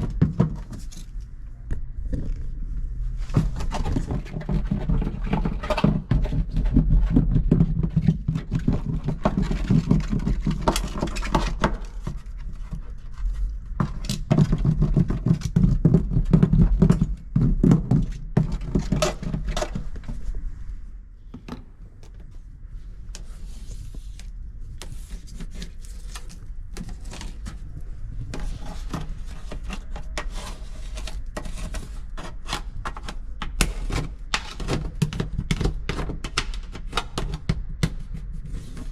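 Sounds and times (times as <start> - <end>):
scraping and rubbing on metal panels: 2.4 - 20.5, 23.0 - 38.9.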